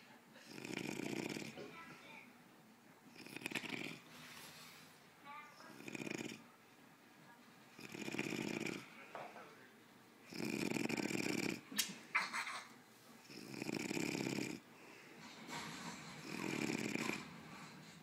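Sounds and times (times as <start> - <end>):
man snoring: 0.5 - 1.6, 3.2 - 4.0, 5.8 - 6.4, 7.8 - 8.9, 10.3 - 11.6, 13.3 - 14.6, 16.2 - 17.3.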